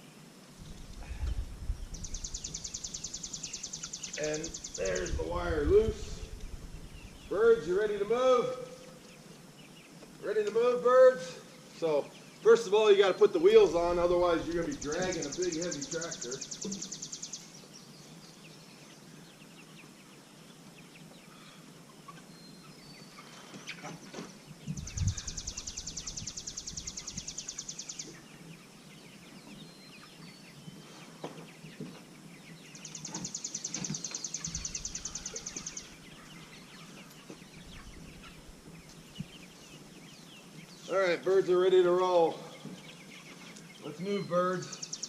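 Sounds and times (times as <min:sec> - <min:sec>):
chickens clucking: 0:12.1 - 0:17.5, 0:18.8 - 0:44.2.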